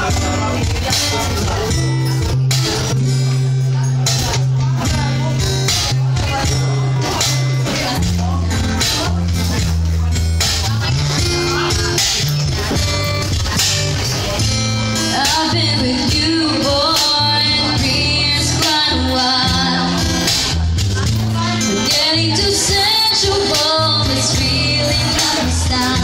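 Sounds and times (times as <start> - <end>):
band playing guitar bass and drums: 0.0 - 26.0
person singing: 15.0 - 20.6, 21.2 - 26.0.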